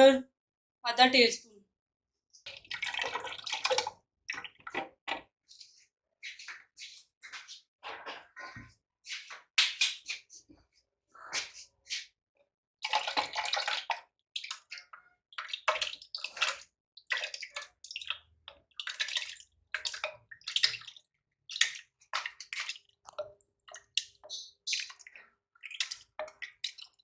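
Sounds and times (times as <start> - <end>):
water splashing and dripping: 2.4 - 10.6, 12.8 - 27.0
water pouring: 2.5 - 5.3, 12.8 - 27.0.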